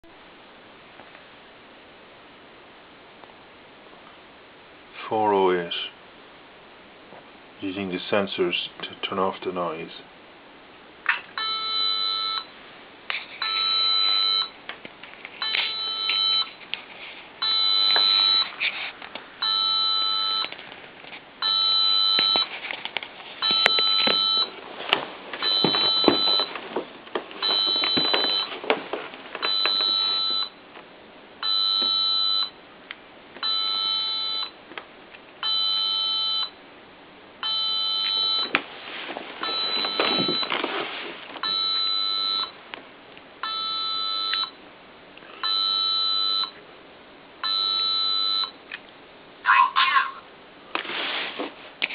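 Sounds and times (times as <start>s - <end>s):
robot speaker beeping: 49.4s - 50.2s.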